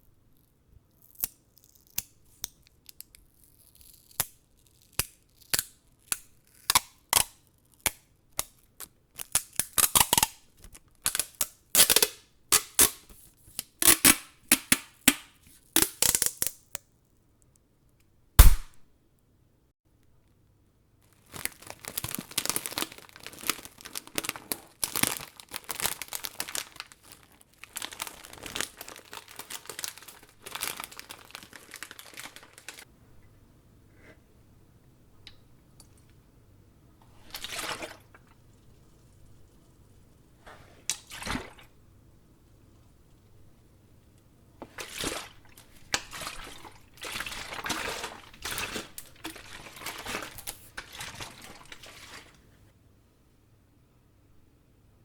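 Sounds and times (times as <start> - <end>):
continuous crinkling: 21.0 - 32.9.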